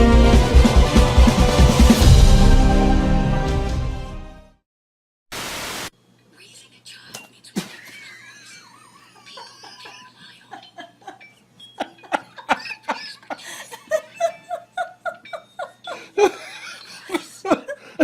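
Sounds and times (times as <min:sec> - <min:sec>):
person laughing: 0:07.6 - 0:18.0.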